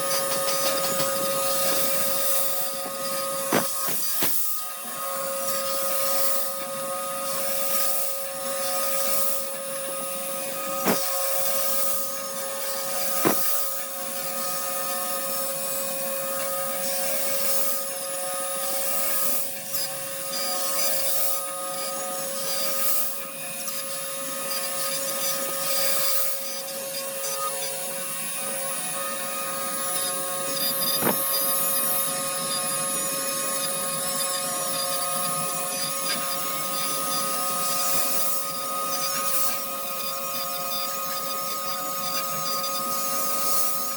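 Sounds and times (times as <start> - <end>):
cnc router spindle whine: 0.0 - 43.9
bit hissing through plastic: 0.9 - 4.6, 10.8 - 11.2, 13.0 - 13.7, 30.8 - 31.5.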